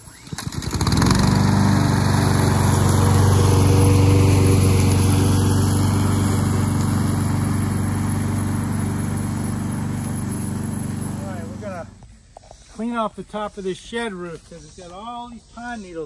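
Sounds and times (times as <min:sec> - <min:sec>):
lawn mower engine running: 0:00.0 - 0:12.0.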